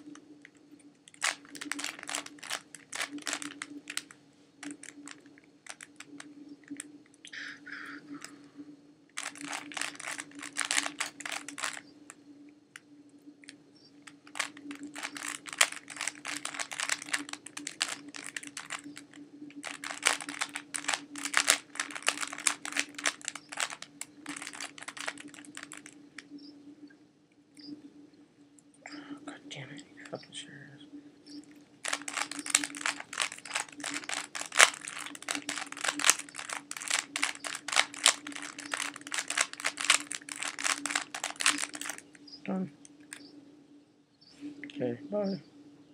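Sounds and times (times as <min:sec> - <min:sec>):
puzzle cube layers clicking: 0:09.2 - 0:11.8, 0:14.0 - 0:26.0, 0:31.8 - 0:42.0.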